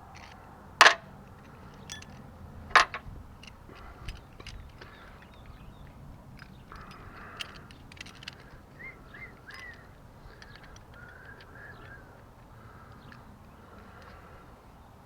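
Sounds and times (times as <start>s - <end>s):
bird chirping: 8.7s - 12.2s.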